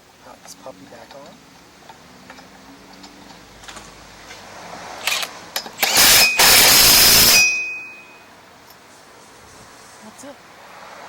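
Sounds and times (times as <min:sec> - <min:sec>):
impact wrench rattling: 0:05.1 - 0:08.1.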